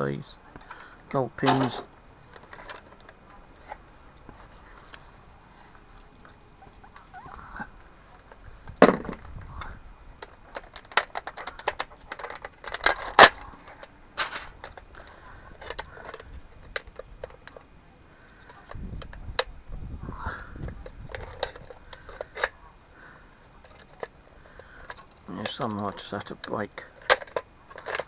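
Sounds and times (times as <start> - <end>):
plastic and metal parts clicking: 0.5 - 19.6, 20.3 - 28.0
sharp plastic crack: 7.3 - 17.6.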